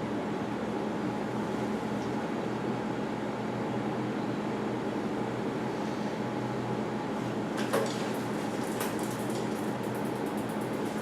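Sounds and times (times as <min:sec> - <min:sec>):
steady mechanical hum: 0:00.0 - 0:11.0
clatter of clicks: 0:07.6 - 0:11.0.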